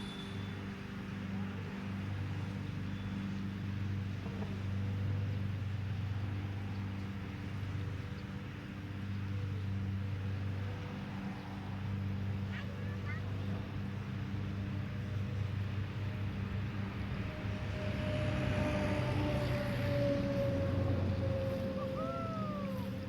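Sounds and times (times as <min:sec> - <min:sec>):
low motor hum: 0:09.1 - 0:23.0.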